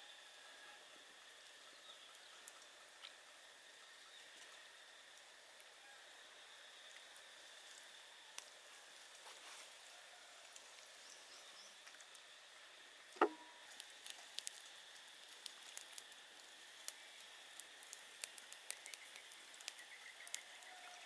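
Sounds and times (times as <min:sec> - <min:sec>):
forest background hiss: 0:00.0 - 0:21.0
small clicks and crackles: 0:02.1 - 0:03.3, 0:06.8 - 0:21.0
sharp knock: 0:13.2 - 0:13.4.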